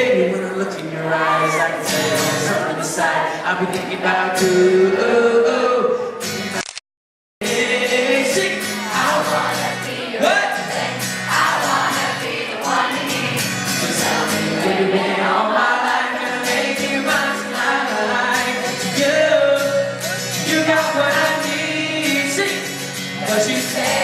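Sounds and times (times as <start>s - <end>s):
live pop music over speakers: 0.0s - 6.7s, 7.4s - 24.0s.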